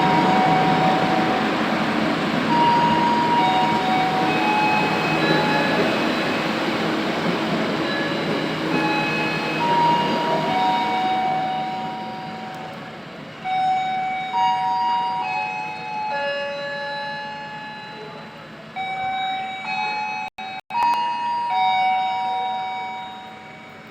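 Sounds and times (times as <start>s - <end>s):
electronic chime melody: 0.0s - 12.6s
train rumble: 0.0s - 20.1s.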